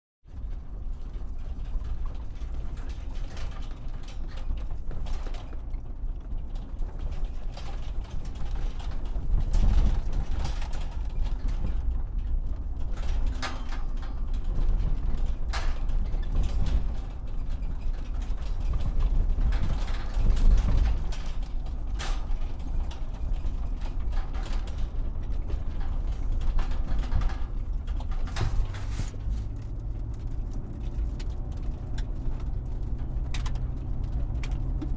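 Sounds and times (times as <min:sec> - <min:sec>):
body rattles and creaks: 0:00.3 - 0:34.9
truck driving rumble: 0:14.4 - 0:34.9.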